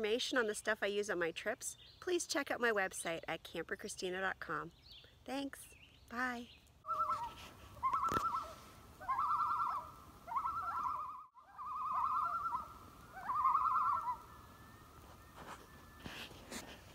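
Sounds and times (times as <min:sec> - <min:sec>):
loon tremolo call: 0:06.9 - 0:16.2.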